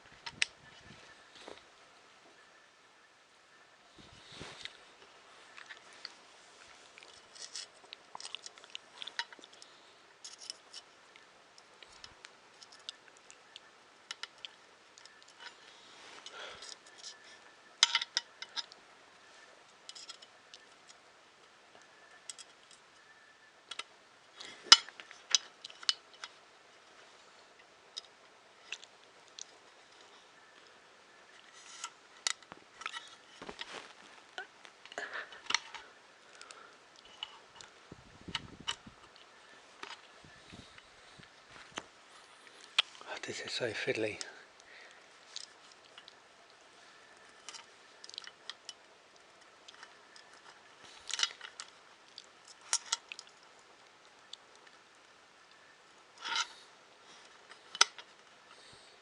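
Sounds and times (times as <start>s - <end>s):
small parts clicking and tapping: 7.0s - 18.8s, 19.7s - 24.0s, 24.6s - 27.0s, 31.3s - 37.7s, 43.8s - 53.5s, 55.4s - 56.6s, 57.2s - 58.8s.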